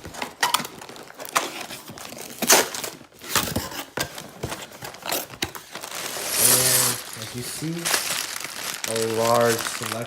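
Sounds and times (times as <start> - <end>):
package crinkling and tearing: 4.6 - 10.0.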